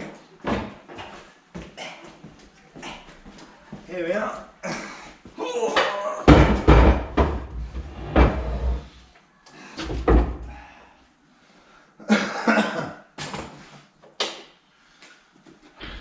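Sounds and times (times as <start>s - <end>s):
heavy thuds and knocks: 6.3s - 8.6s.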